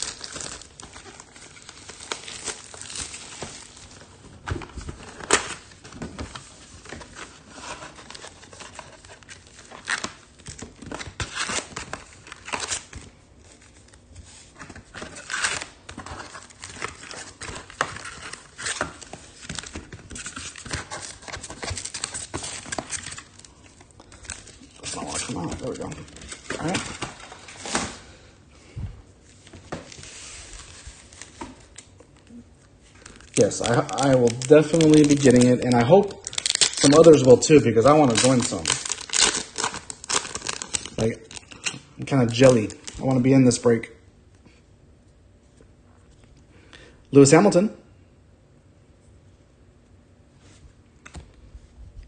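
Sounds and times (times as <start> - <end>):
card pack wrappers crinkling: 0.0 - 14.0, 14.6 - 27.8, 29.8 - 43.8.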